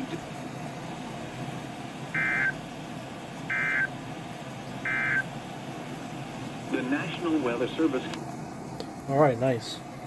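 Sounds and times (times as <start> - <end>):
two-tone digital data chirps: 2.2 - 2.6, 3.5 - 3.9, 4.9 - 5.2.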